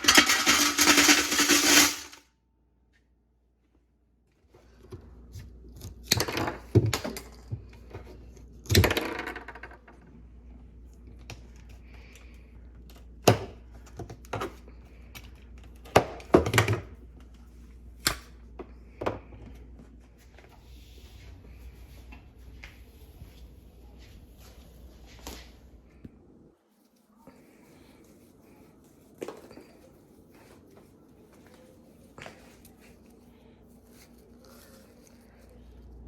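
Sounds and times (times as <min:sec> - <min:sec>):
hard objects knocking and clicking: 0:00.0 - 0:02.2
rough clatter: 0:00.0 - 0:02.2.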